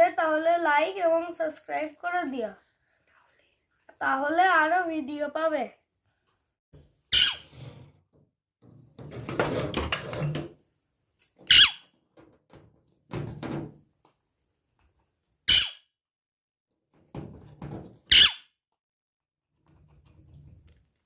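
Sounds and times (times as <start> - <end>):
parrot shrill calls: 7.1 - 7.5, 11.5 - 11.8, 15.5 - 15.8, 18.1 - 18.5
clattering and knocking of toys: 8.6 - 10.6, 17.0 - 18.1.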